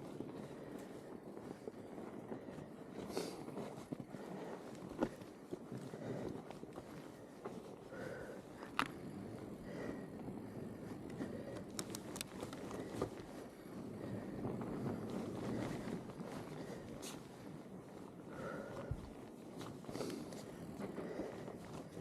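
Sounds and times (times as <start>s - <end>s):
bike tyres crunching through snow: 0.0s - 22.0s
bike clicks and knocks: 11.5s - 13.2s.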